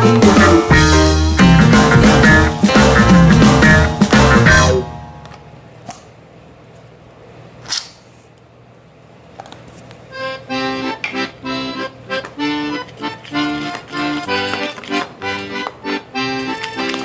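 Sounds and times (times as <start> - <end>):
accordion tune: 0.0 - 5.0, 10.1 - 17.0
background music: 0.0 - 5.2, 10.3 - 17.0.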